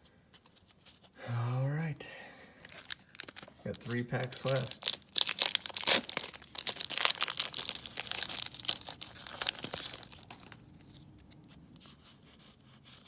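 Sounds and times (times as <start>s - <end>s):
foil wrapper tearing and crinkling: 2.6s - 10.6s.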